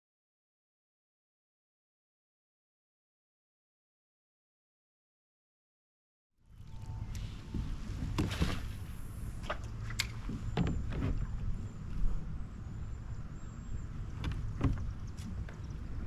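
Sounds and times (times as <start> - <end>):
low steady rumble: 6.4 - 16.0.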